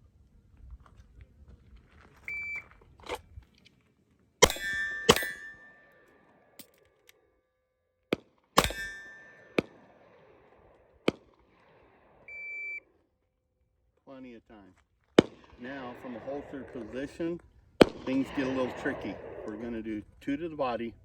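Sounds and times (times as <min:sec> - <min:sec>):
handgun shots: 0:04.4 - 0:05.7, 0:08.6 - 0:09.8
steel plate clanging and ringing: 0:04.4 - 0:05.9, 0:08.6 - 0:09.5
magazine reload clicks: 0:08.6 - 0:09.0.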